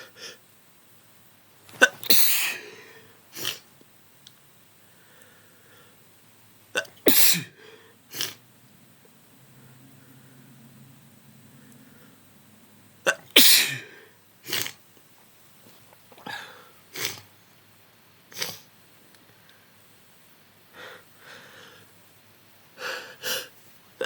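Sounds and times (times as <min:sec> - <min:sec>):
person sneezing: 0:01.7 - 0:03.7, 0:06.8 - 0:08.4, 0:13.1 - 0:14.8, 0:16.2 - 0:17.3, 0:18.3 - 0:18.7
sniffing through congested nose: 0:02.2 - 0:03.7, 0:07.3 - 0:08.4, 0:13.6 - 0:14.8, 0:16.2 - 0:17.3, 0:18.3 - 0:18.7, 0:22.8 - 0:23.6.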